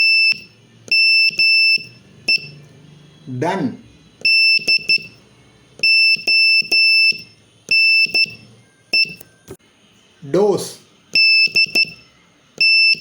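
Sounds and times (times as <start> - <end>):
morse code beeps: 0.0 - 2.6, 4.2 - 5.2, 5.8 - 9.3, 11.1 - 13.0.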